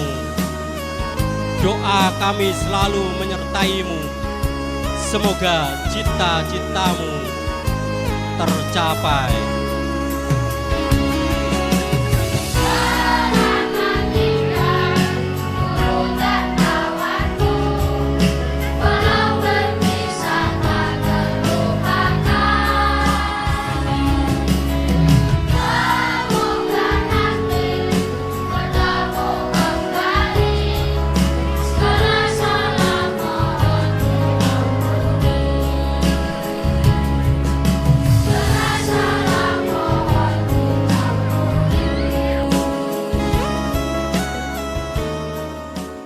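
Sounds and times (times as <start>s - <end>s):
backing track with bass and beat: 4.4s - 46.0s
children's choir singing: 12.6s - 24.8s, 25.5s - 37.2s, 38.2s - 43.4s.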